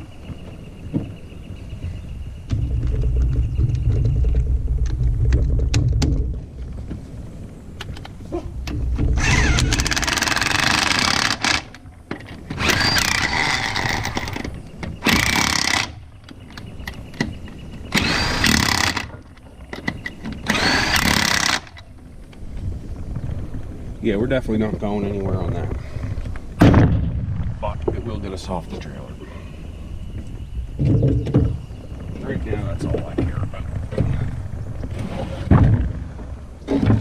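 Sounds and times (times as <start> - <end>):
low rumble: 0.7 - 10.2, 22.0 - 37.0
power tool bursts: 9.2 - 11.7, 12.6 - 14.4, 15.0 - 16.0, 17.9 - 19.1, 20.4 - 21.8.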